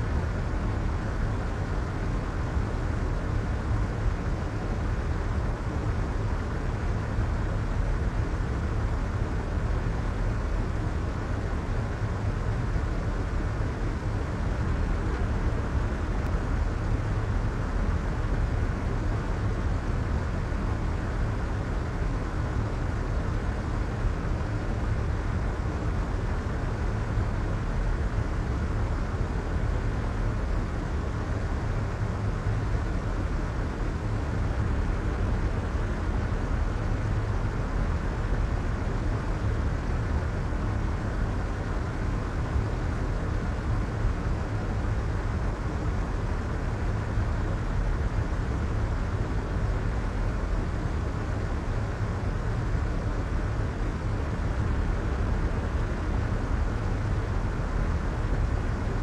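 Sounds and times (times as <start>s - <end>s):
soft white noise hiss: 0.0s - 59.0s.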